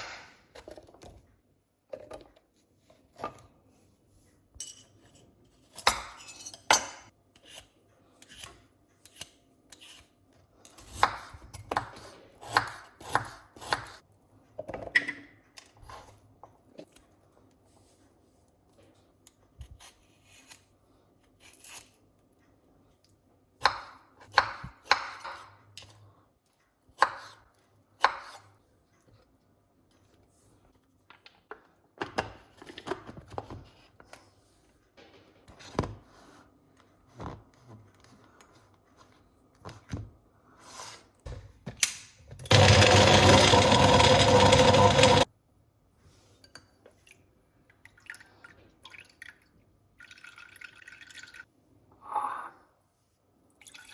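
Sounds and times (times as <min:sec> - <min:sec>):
blender motor running: 0:42.5 - 0:45.3.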